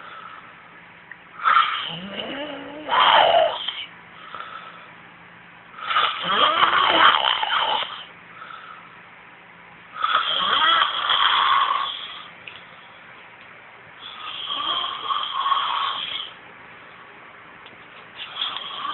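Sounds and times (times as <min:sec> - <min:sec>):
man snoring: 0:01.4 - 0:03.9, 0:05.8 - 0:08.1, 0:10.0 - 0:12.3, 0:14.1 - 0:16.4, 0:18.3 - 0:18.9.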